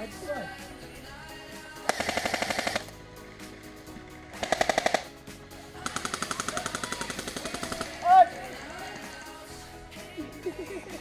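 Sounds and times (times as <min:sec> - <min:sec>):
airsoft gun firing bursts: 0:01.9 - 0:02.9, 0:04.4 - 0:05.1, 0:05.8 - 0:08.2.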